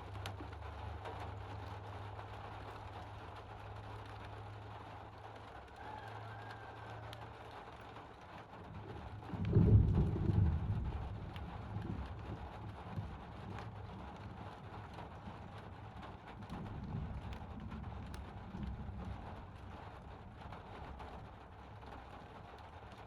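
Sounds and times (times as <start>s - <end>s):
rain ticking: 0.0s - 23.0s
thunder rumbling: 8.7s - 22.4s.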